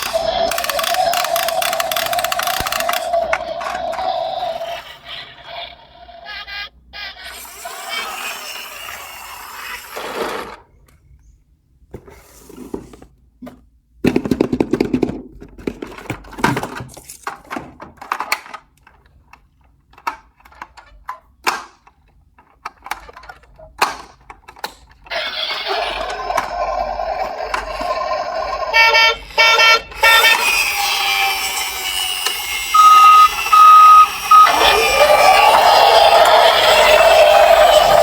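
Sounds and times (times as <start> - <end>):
hard toys knocking and clattering: 0.0 - 4.7, 11.9 - 38.0.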